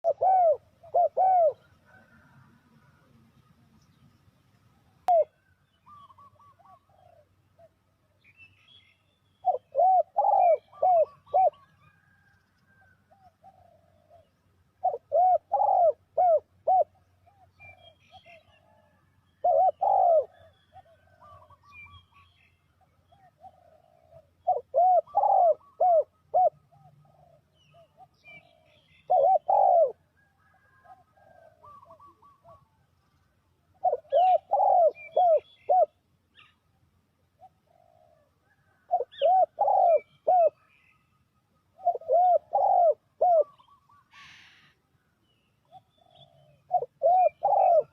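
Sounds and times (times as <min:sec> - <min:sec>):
dove cooing: 0:00.0 - 0:03.3, 0:04.7 - 0:07.8, 0:09.4 - 0:22.2, 0:22.8 - 0:32.9, 0:33.7 - 0:36.0, 0:37.3 - 0:40.9, 0:41.6 - 0:44.8, 0:45.6 - 0:47.9
faint small bird chirps: 0:03.4 - 0:15.8, 0:37.4 - 0:47.9.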